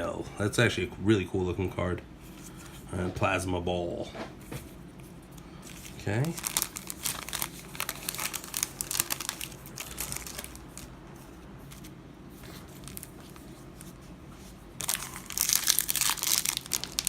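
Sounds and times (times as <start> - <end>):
foil wrapper crinkling and tearing: 5.6 - 10.9, 12.6 - 14.0, 14.8 - 17.0.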